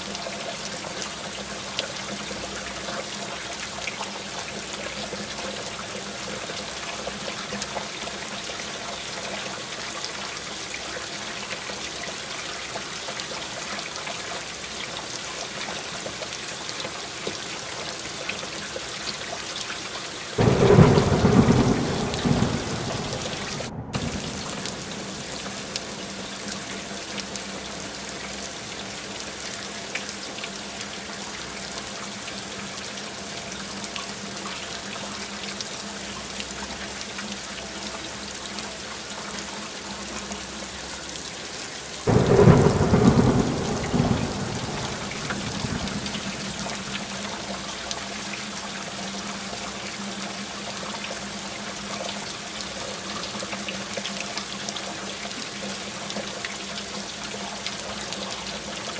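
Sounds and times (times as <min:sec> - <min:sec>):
steady rain falling: 0:00.0 - 0:58.9
thunder clap and rumble: 0:20.4 - 0:26.0, 0:42.1 - 0:47.2.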